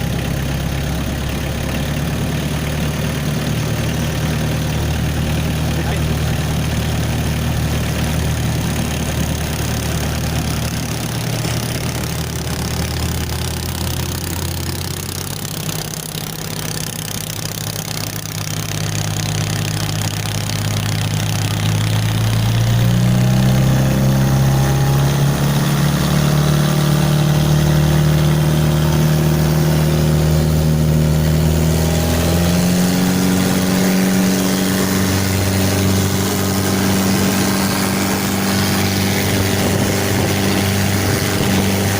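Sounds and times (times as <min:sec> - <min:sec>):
engine revving up: 0:00.0 - 0:41.9.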